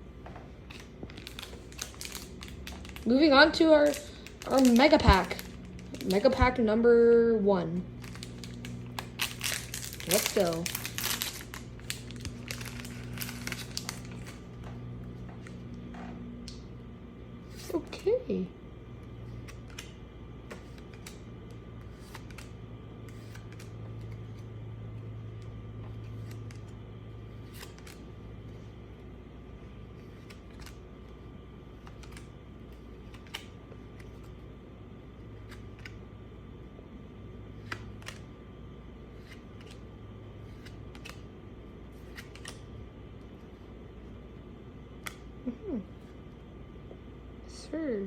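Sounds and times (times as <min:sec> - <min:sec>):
steady low hum: 0:00.0 - 0:48.0
cards clicking and rustling: 0:00.2 - 0:06.6, 0:08.0 - 0:16.6, 0:19.4 - 0:28.2, 0:29.9 - 0:34.5, 0:35.3 - 0:36.1, 0:37.5 - 0:38.4, 0:39.1 - 0:41.3, 0:41.9 - 0:42.8, 0:45.0 - 0:45.3
trading cards clicking and snapping: 0:19.4 - 0:24.5, 0:31.8 - 0:34.4, 0:35.4 - 0:36.0, 0:37.6 - 0:38.3, 0:39.2 - 0:39.9, 0:40.5 - 0:41.3, 0:42.0 - 0:42.7, 0:45.0 - 0:45.3.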